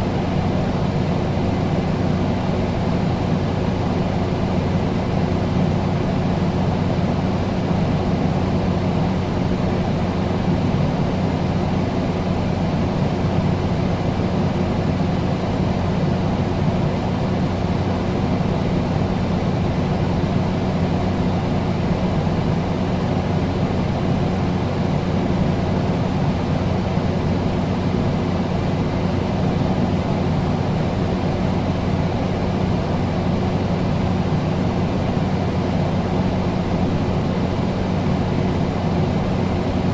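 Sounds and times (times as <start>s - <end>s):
air conditioner running: 0.0s - 39.9s.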